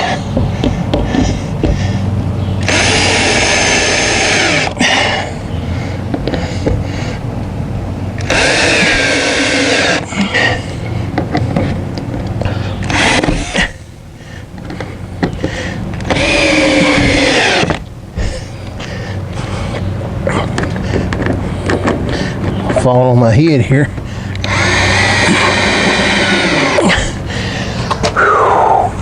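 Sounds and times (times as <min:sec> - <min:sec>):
power drill running: 0:02.6 - 0:05.3, 0:08.2 - 0:10.2, 0:12.8 - 0:13.8, 0:16.0 - 0:17.8, 0:24.3 - 0:27.5.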